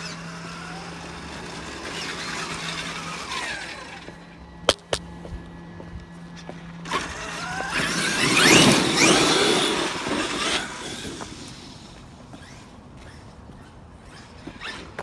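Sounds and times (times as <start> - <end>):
tyres rushing through snow: 0.0 - 4.1, 6.9 - 13.2
electric motor whine rising: 0.0 - 15.0.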